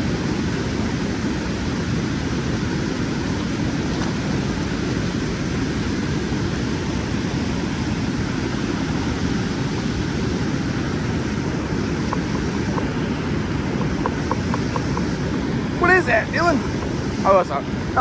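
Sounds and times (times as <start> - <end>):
river water roaring through dam: 0.0 - 18.0
faint light ticks: 12.0 - 12.9.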